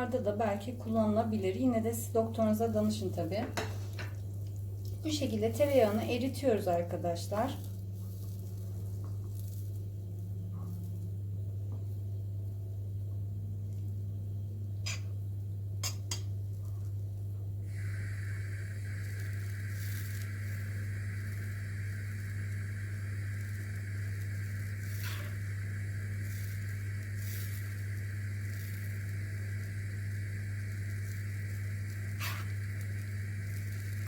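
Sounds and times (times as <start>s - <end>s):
low hum: 0.0s - 34.0s
butter sizzling in a pan: 17.7s - 34.0s.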